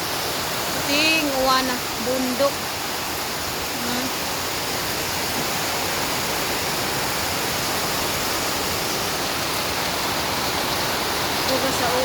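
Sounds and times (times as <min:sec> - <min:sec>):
heavy rain pouring: 0:00.0 - 0:12.0.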